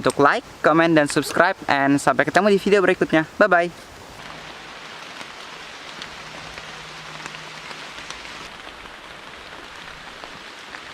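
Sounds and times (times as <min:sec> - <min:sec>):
raindrops ticking: 0:00.0 - 0:10.9
steady rain hiss: 0:00.0 - 0:10.9.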